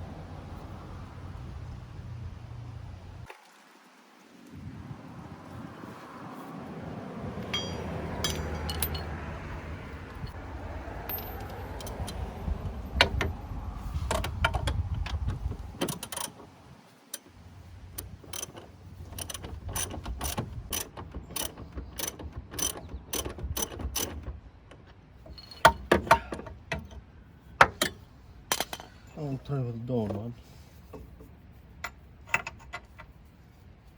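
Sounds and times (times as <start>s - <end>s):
ratchet wrench clicking: 18.0s - 24.2s.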